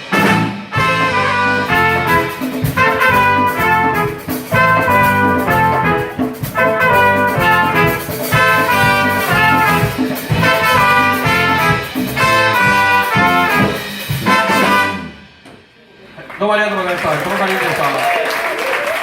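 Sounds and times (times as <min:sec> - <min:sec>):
trumpet melody: 0:00.0 - 0:15.4
backing accompaniment with bass: 0:00.0 - 0:15.5.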